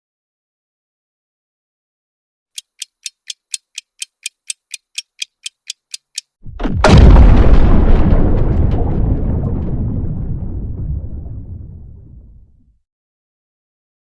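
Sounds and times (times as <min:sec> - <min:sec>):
countdown timer ticking: 0:02.6 - 0:06.3
explosion boom with low rumble: 0:06.4 - 0:12.7.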